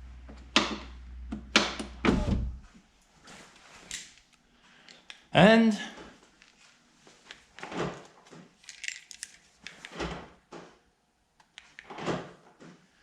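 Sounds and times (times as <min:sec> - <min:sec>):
keys jingling: 0:08.6 - 0:09.5.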